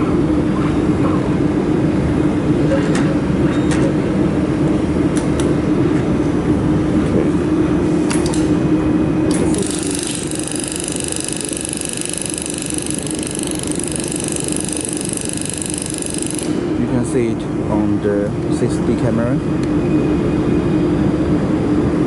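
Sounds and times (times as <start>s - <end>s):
steady high buzz: 0.0s - 22.0s
welding machine low hum: 7.6s - 17.9s.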